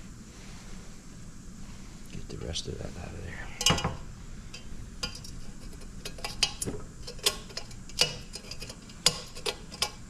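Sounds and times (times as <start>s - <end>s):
hand tool scraping in metal hole: 5.0s - 10.0s.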